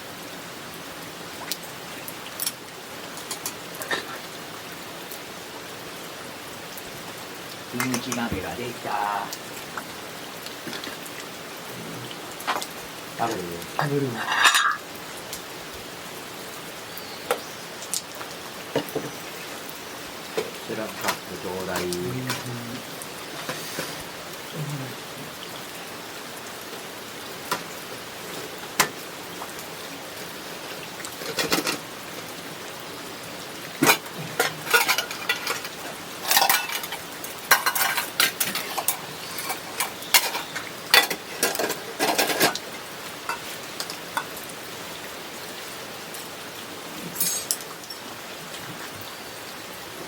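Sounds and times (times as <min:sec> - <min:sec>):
rain hiss: 0:00.0 - 0:50.0
ladle and spoons clinking on pot: 0:14.2 - 0:14.8, 0:33.8 - 0:35.7, 0:36.3 - 0:42.6, 0:47.2 - 0:48.0.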